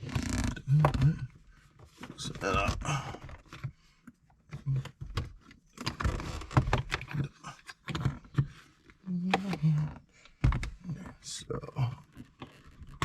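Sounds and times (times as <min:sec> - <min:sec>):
plastic scraping: 0:04.6 - 0:10.7.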